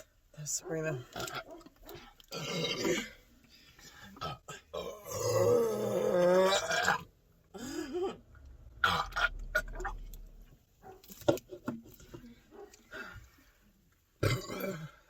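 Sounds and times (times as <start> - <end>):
person burping: 2.3 - 3.2, 4.2 - 10.0, 14.2 - 15.0.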